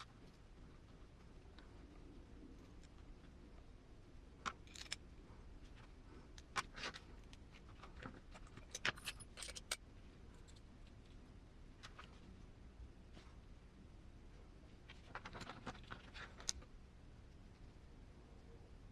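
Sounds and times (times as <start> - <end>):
small metal parts clinking: 4.4 - 5.0, 8.3 - 9.8.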